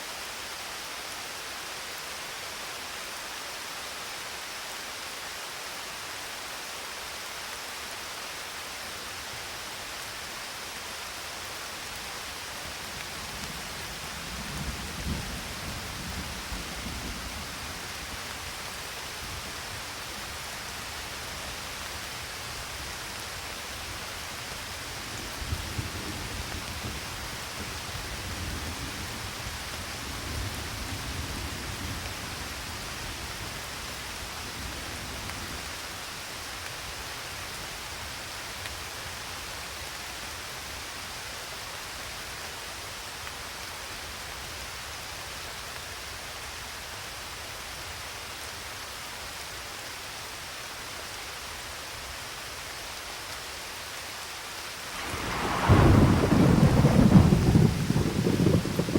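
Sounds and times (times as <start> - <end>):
steady rain hissing: 0.0 - 58.9
distant thunder rumbling: 55.0 - 58.9.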